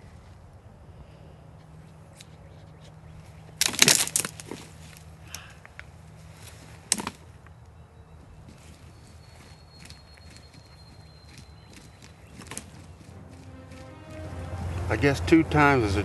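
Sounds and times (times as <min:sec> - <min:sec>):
turkey wings flapping: 0:11.2 - 0:13.9.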